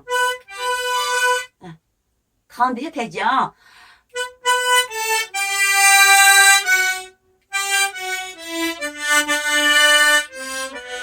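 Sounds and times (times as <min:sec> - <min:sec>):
harmonica melody: 0:00.0 - 0:01.6, 0:04.1 - 0:11.0.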